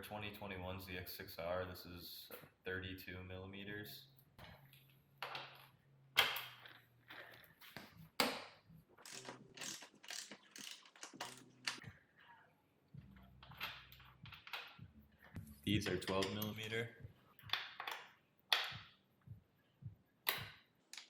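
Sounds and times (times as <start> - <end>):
socket wrench clicking: 9.1 - 11.8, 20.2 - 21.0.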